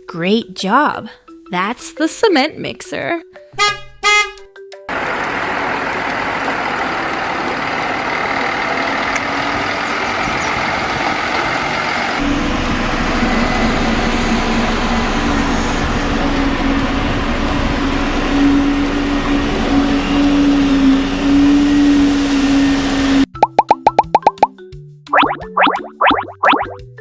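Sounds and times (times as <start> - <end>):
concrete mixer truck engine: 4.9 - 23.2.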